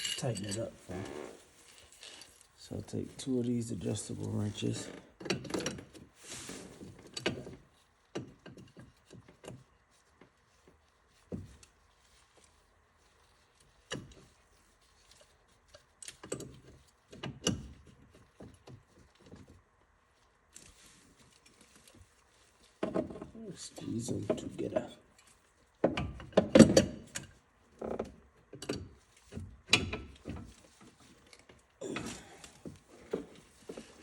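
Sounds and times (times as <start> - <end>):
wrenches knocking on metal: 0.0 - 0.8.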